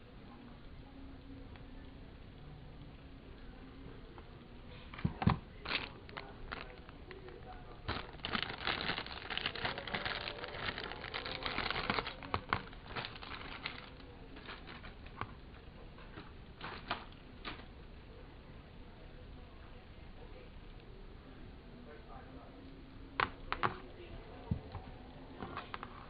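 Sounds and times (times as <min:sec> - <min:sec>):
packaging crinkling and rustling: 0:04.8 - 0:17.7.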